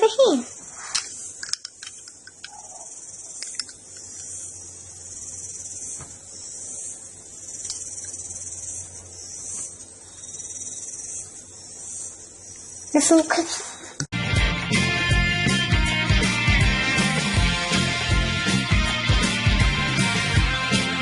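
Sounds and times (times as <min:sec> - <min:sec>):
high-pitched hiss: 0:00.0 - 0:14.1
plastic pieces clicking: 0:01.0 - 0:02.6, 0:03.4 - 0:04.2.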